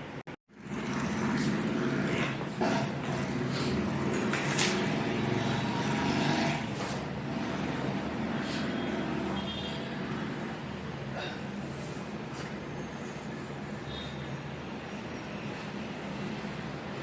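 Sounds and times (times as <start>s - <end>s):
low motor hum: 0.5s - 11.1s.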